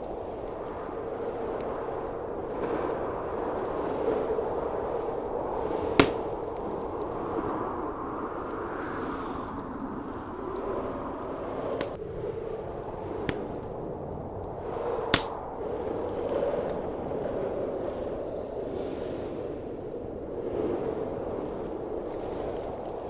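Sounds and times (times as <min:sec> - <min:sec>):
blizzard wind rushing: 0:00.0 - 0:23.0
wood fire crackling pops: 0:04.8 - 0:08.7, 0:11.2 - 0:17.0.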